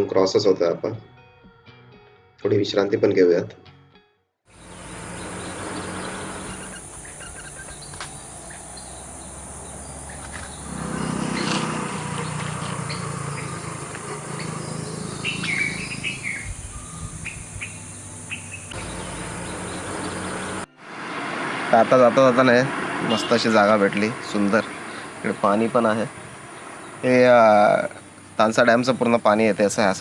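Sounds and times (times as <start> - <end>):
high insect buzz: 4.6 - 20.7
birds chirping: 4.6 - 20.8, 22.4 - 28.6.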